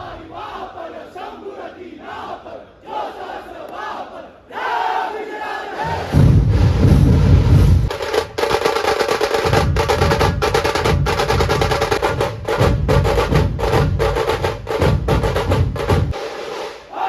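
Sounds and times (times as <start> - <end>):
rapid snare drum strokes: 5.9 - 17.0
heavy bass drum beats: 6.1 - 8.7, 9.3 - 16.2.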